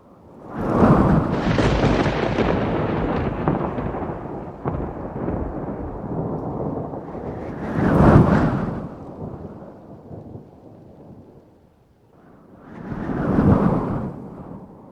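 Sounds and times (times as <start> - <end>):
thunder rumbling: 0.0 - 11.4
sharp thunder cracks: 0.5 - 10.4.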